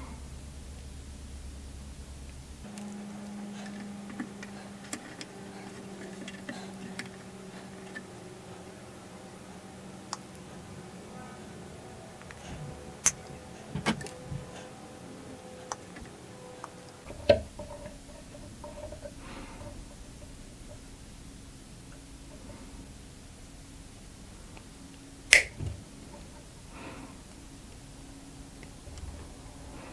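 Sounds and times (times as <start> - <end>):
higher steady hum: 0.0 - 29.9
steady low hum: 0.0 - 29.9
sharp clicks and taps on ukulele: 25.3 - 25.6.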